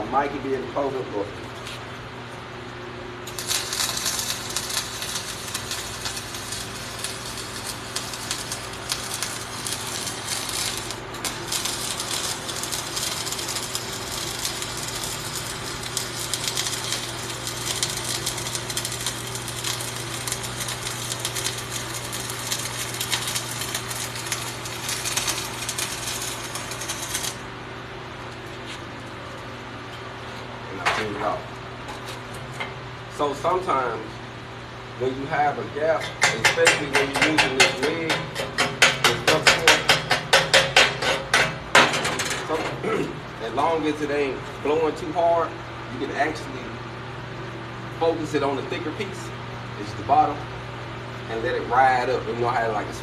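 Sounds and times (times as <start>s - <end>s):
steady low hum: 0.0s - 53.0s
welding arc crackling: 3.2s - 27.5s, 35.2s - 44.1s.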